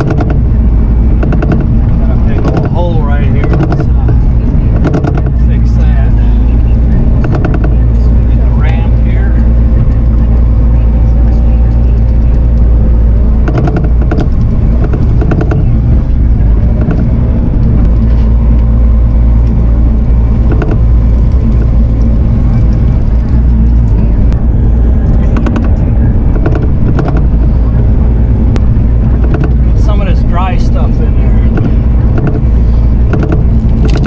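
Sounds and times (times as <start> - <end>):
knocks and clanks: 0.0 - 0.5, 1.1 - 5.8, 7.2 - 8.0, 13.4 - 18.7, 19.4 - 23.9, 24.8 - 27.4, 28.6 - 29.9, 31.4 - 34.0
diesel engine running: 0.0 - 34.0.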